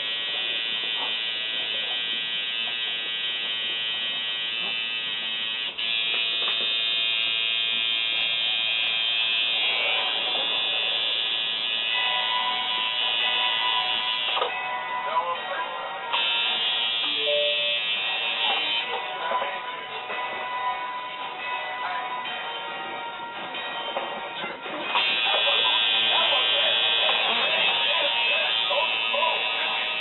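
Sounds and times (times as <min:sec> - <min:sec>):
tattoo machine buzzing: 0:00.0 - 0:14.6, 0:16.1 - 0:19.1, 0:24.8 - 0:30.0
background music: 0:13.4 - 0:16.3, 0:17.0 - 0:24.9.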